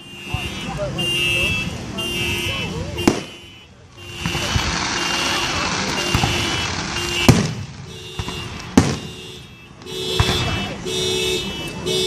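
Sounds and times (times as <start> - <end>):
car alarm tones: 0.0 - 12.0
fireworks hissing: 4.2 - 9.0
firework bang: 4.2 - 9.2.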